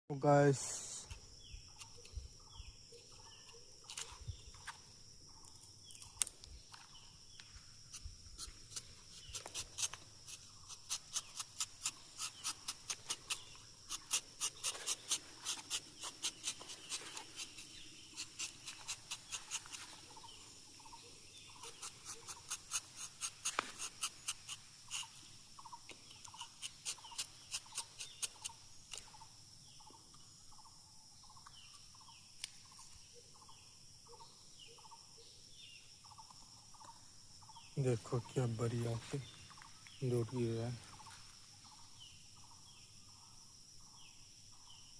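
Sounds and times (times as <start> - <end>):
high insect drone: 0.1 - 44.9
knife clicking on tree bark: 1.1 - 2.2, 3.4 - 4.8, 5.4 - 20.3, 21.6 - 25.2, 25.8 - 29.2.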